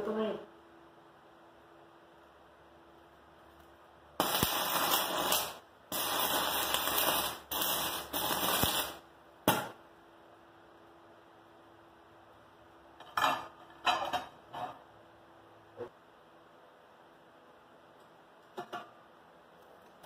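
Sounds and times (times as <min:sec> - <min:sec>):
welding arc crackling and hissing: 0:04.2 - 0:09.7.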